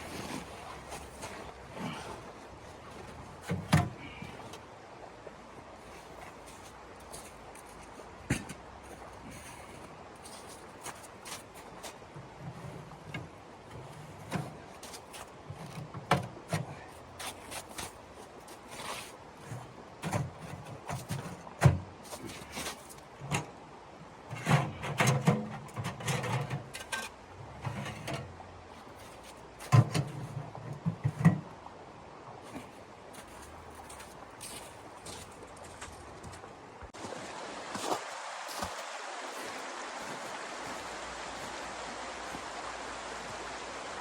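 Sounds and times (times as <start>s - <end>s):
knocks and thuds of handling: 3.4s - 4.2s, 29.6s - 31.5s.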